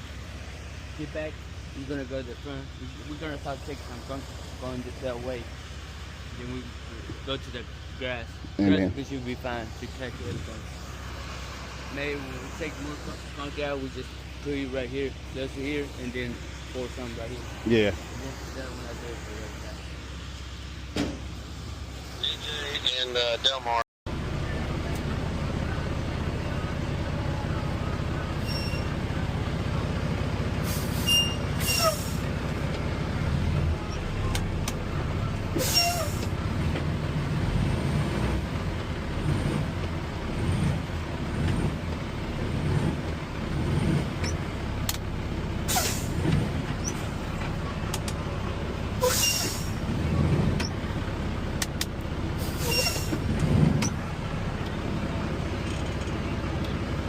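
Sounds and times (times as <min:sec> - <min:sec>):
diesel engine running: 0:00.0 - 0:57.0
short air hisses: 0:45.7 - 0:46.2, 0:49.0 - 0:49.8, 0:52.4 - 0:53.2.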